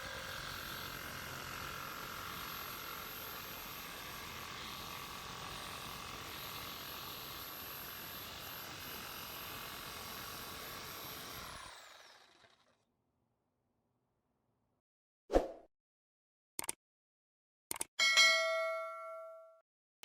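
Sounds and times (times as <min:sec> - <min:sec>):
power tool motor whining: 0:00.0 - 0:12.6.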